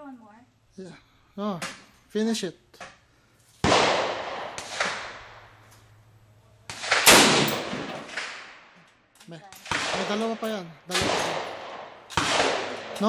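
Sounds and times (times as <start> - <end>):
rifle shots echoing: 3.6 - 5.6, 6.7 - 8.8, 9.5 - 13.0.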